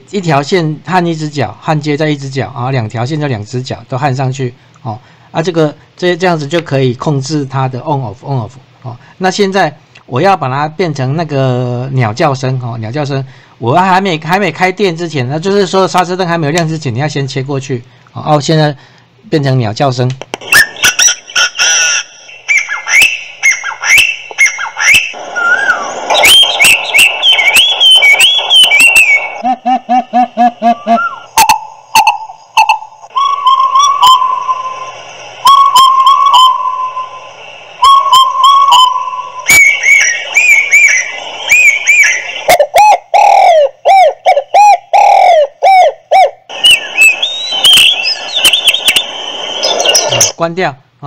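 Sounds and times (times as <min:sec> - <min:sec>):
birdsong through horn speaker: 0:20.4 - 0:29.5, 0:30.6 - 0:45.4, 0:46.5 - 0:50.4
electronic horn bird-call chirps: 0:20.5 - 0:29.5, 0:37.8 - 0:42.2.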